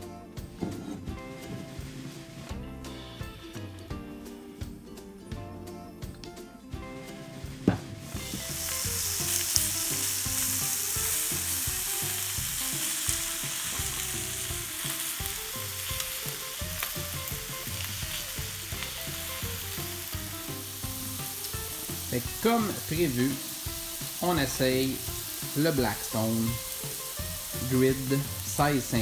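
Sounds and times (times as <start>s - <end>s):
patties sizzling on a griddle: 8.0s - 29.0s.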